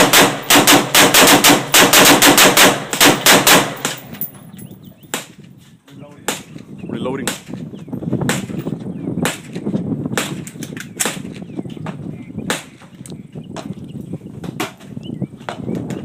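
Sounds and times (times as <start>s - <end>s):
gunshots: 0.0s - 4.1s.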